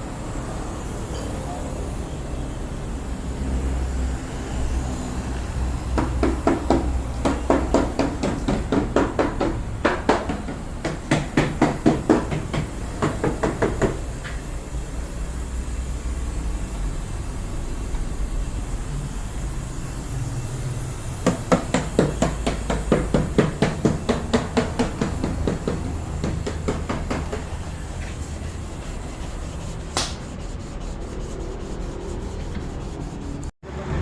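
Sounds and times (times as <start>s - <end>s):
steady low hum: 0.0s - 33.6s
rapid hammering: 5.9s - 14.2s, 20.9s - 33.6s.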